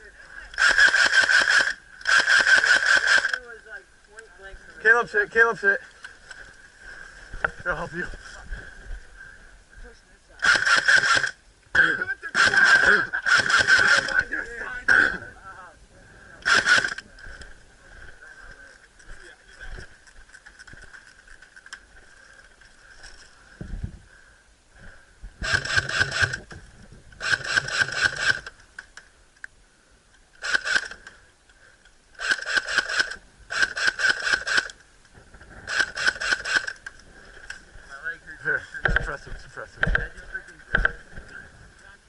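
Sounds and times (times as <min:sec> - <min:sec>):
airsoft gun firing bursts: 0:00.6 - 0:03.4, 0:10.4 - 0:11.4, 0:12.3 - 0:14.2, 0:16.4 - 0:17.0, 0:25.4 - 0:26.4, 0:27.2 - 0:28.5, 0:30.4 - 0:31.0, 0:32.2 - 0:34.7, 0:35.7 - 0:36.7.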